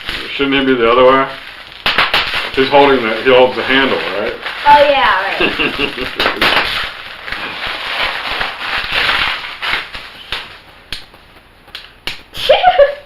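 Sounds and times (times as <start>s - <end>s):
plastic packaging crinkling: 0.0s - 12.9s
sharp clicks or taps: 10.8s - 12.4s.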